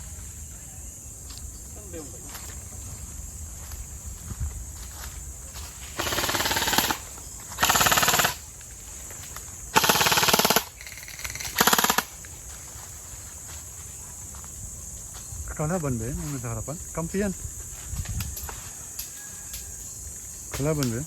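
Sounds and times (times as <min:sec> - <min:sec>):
cricket chorus: 0:00.0 - 0:21.0
airsoft guns firing bursts: 0:06.0 - 0:08.4, 0:09.7 - 0:12.1.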